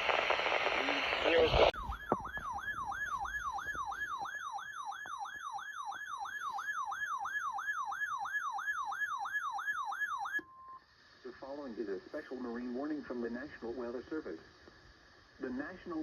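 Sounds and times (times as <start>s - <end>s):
electronic yelp siren: 1.8s - 10.8s.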